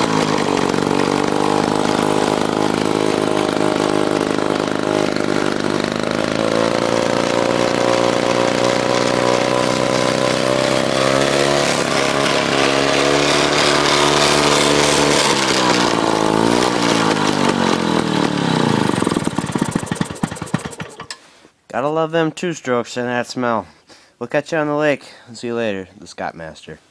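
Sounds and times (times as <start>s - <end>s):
lawn mower engine running: 0.0s - 21.2s.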